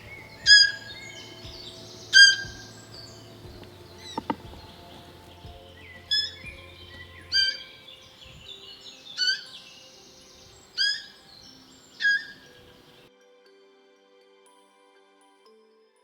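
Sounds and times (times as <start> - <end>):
high-pitched animal calls: 0.0 - 5.3, 12.0 - 13.0.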